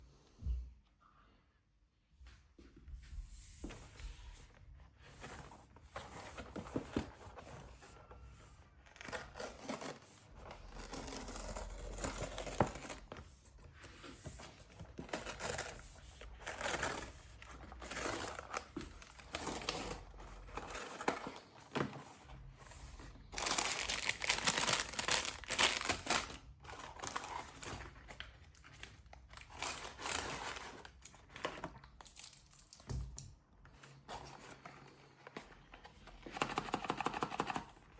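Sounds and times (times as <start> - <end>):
packaging crinkling and tearing: 8.8 - 13.2, 23.2 - 32.9.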